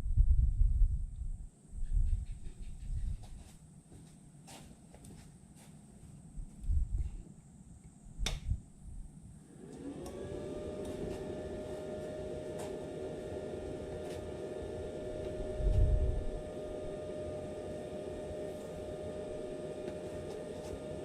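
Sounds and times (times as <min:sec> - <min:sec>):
electric motor whirring: 0:09.6 - 0:21.0.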